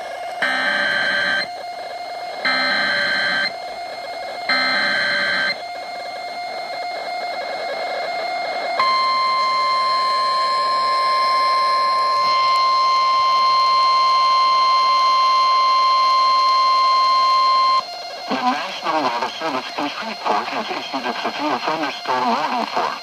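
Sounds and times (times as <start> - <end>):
screechy digital header tones: 0.4 - 1.5, 2.4 - 3.5, 4.5 - 5.6.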